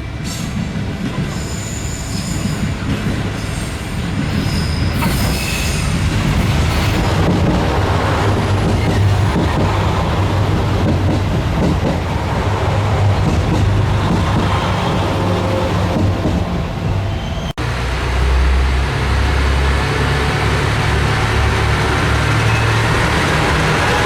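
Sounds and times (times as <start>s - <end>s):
diesel railcar running: 0.0s - 24.0s
wheel squeal: 3.4s - 6.1s, 17.0s - 17.6s, 22.2s - 24.0s.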